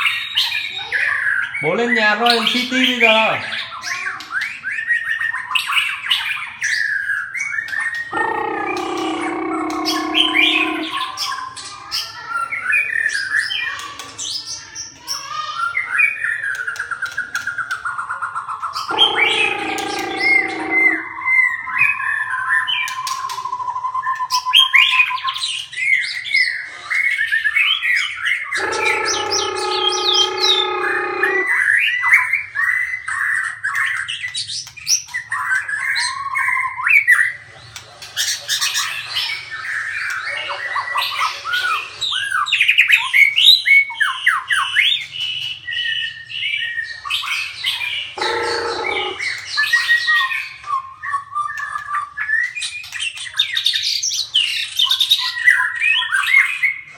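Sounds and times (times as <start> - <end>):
harsh bird calls: 0.0 - 56.9
bird whistling and chirping: 3.8 - 11.3, 42.1 - 56.8.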